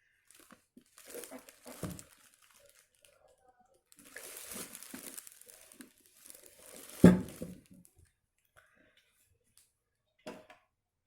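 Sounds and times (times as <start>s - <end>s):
plastic packaging crinkling: 0.3s - 7.9s.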